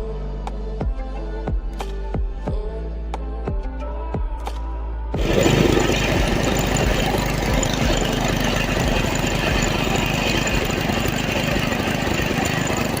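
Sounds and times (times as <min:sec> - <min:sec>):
engine idling: 0:05.2 - 0:13.0.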